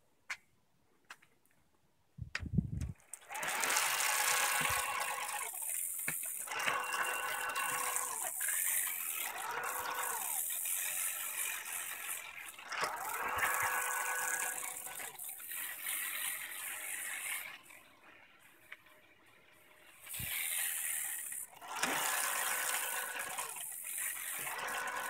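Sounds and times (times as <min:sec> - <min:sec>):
electric motor whirring: 0:03.2 - 0:17.8, 0:20.0 - 0:25.0.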